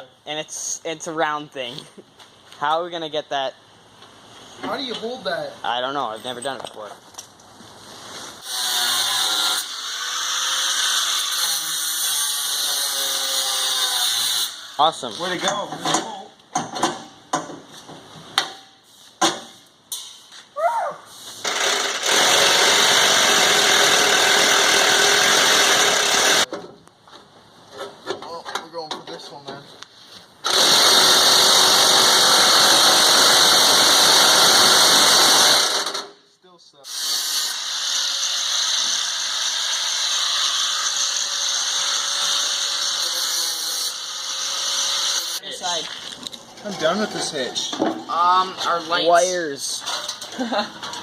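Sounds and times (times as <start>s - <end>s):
power tool running: 21.4s - 26.5s, 30.4s - 36.1s, 36.8s - 45.4s.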